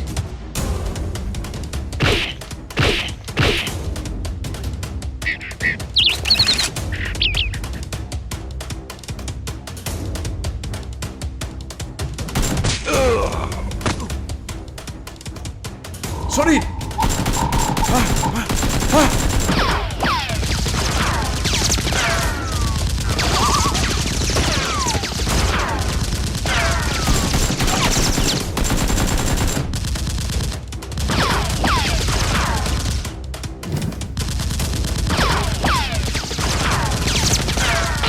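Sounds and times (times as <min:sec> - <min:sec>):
automatic gunfire: 0:17.0 - 0:30.1.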